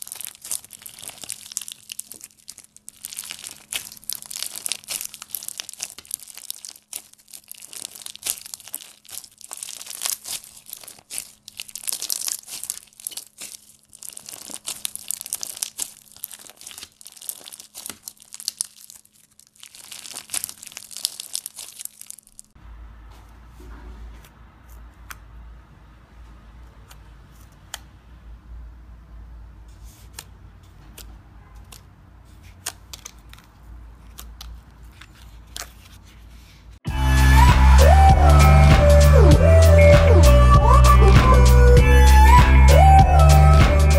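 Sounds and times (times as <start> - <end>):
crunchy slime crackling: 0.0 - 22.6
low hum: 36.9 - 43.9.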